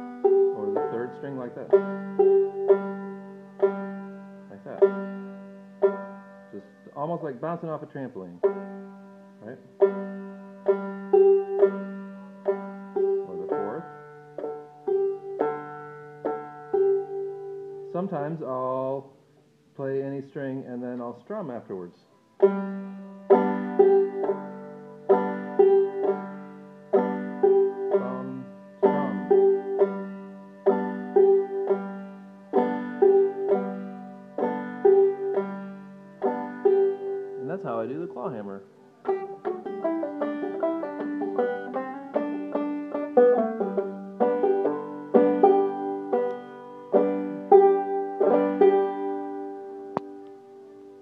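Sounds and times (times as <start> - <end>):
banjo strikes and strums: 0.0 - 19.0, 22.3 - 51.0.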